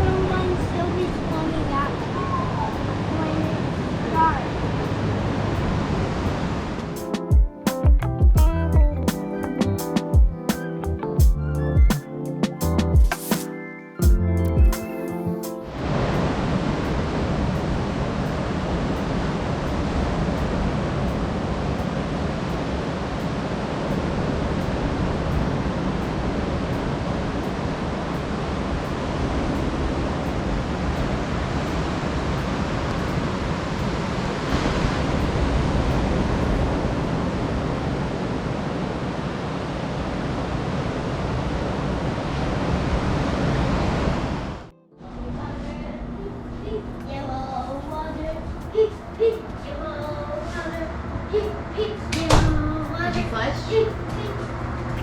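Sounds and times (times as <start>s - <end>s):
ocean surf rushing: 0.0s - 7.8s, 14.8s - 45.5s.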